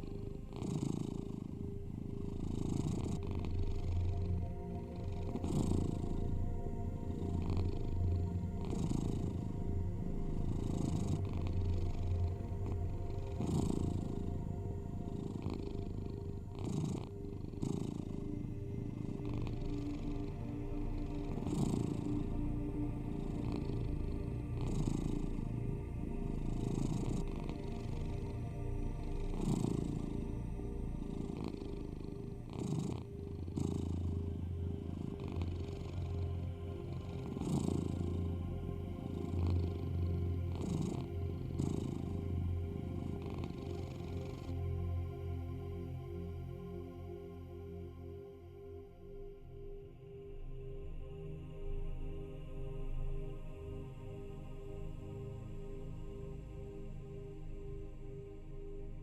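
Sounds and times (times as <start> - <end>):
cat purring: 0.0 - 45.9
steady low hum: 1.1 - 16.5, 27.2 - 59.0.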